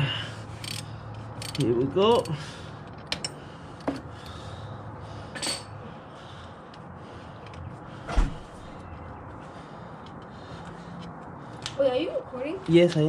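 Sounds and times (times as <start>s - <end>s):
ratchet clicking: 0.6s - 2.4s.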